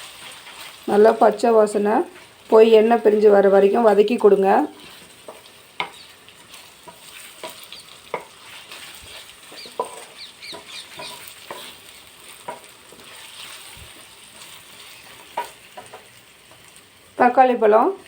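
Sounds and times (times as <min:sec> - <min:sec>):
vegetables sizzling in oil: 0:00.0 - 0:18.0
spoon scraping and knocking pan: 0:04.8 - 0:16.7.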